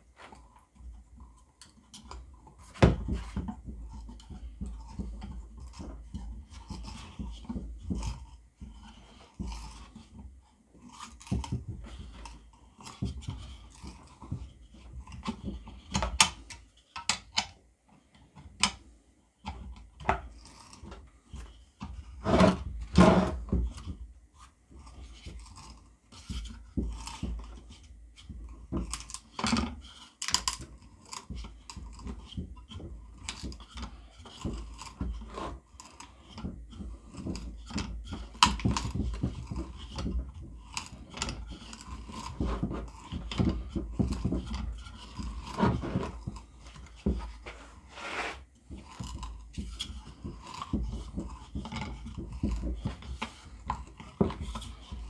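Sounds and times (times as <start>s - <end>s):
drill bit scraping wood: 44.0s - 55.0s.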